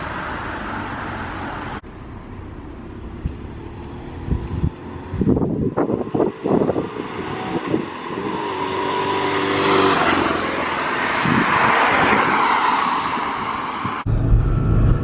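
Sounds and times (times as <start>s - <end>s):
wind rush: 4.1s - 15.0s.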